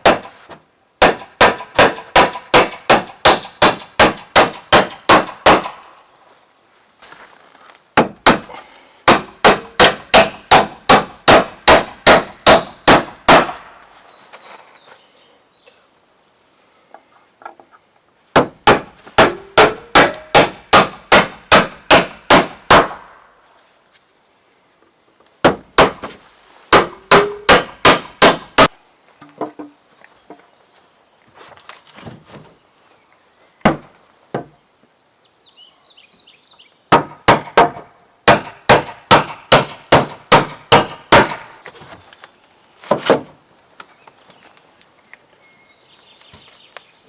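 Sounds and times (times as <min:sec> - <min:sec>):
hammer driving nails: 0:01.0 - 0:05.8, 0:08.0 - 0:08.5, 0:09.1 - 0:13.6, 0:18.4 - 0:23.1, 0:26.7 - 0:28.7, 0:36.9 - 0:41.5.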